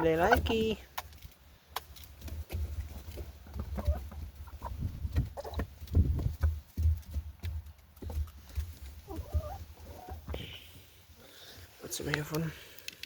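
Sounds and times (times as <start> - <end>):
chickens clucking: 0.0 - 0.8, 2.2 - 10.8
low thumping rumble: 4.7 - 7.0.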